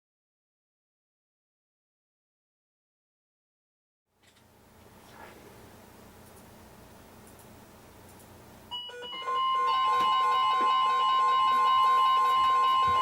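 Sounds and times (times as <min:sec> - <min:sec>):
faint radio hiss: 0:04.3 - 0:08.7
radio alarms beeping: 0:08.7 - 0:13.0
steady radio alarm tone: 0:08.9 - 0:13.0.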